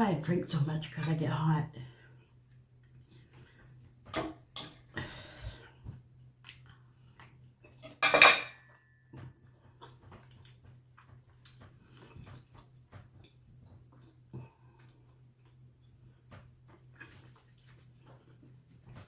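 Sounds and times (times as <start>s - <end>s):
cutlery scraping on a plate: 7.8s - 8.6s
cutlery clattering: 7.8s - 8.7s.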